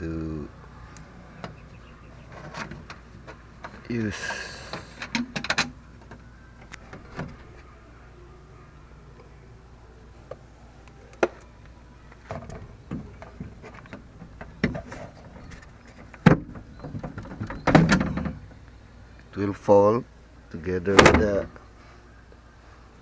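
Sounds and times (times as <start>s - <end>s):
low steady hum: 0.0s - 23.0s
clicks and knocks of car door parts: 1.4s - 3.9s, 4.7s - 7.7s, 11.2s - 18.6s, 20.9s - 21.5s.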